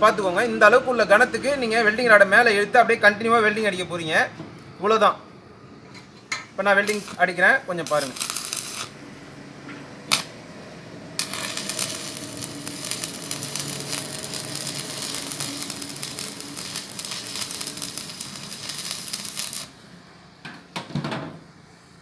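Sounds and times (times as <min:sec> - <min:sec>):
welding arc crackling and sizzling: 0:06.7 - 0:09.3, 0:10.1 - 0:10.4, 0:11.2 - 0:20.0.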